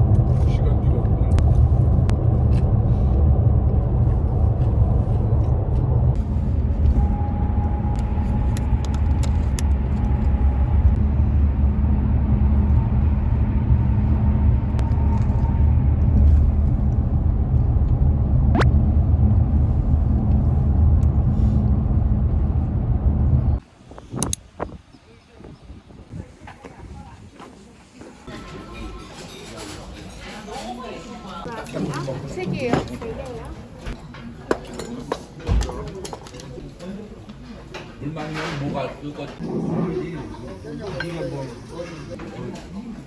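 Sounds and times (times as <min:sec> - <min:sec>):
car road and engine rumble: 0:00.0 - 0:24.4.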